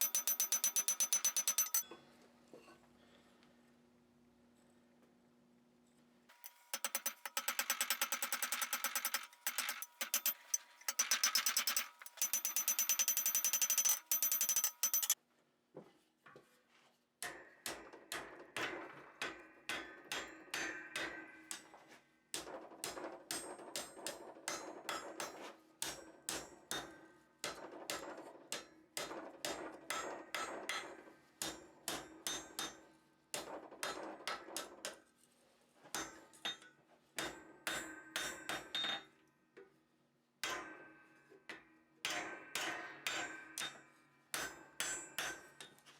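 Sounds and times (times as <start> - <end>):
hammer striking iron on anvil: 0.0 - 1.8, 6.4 - 15.2, 17.2 - 21.7, 22.4 - 32.8, 36.0 - 39.1, 40.4 - 45.7.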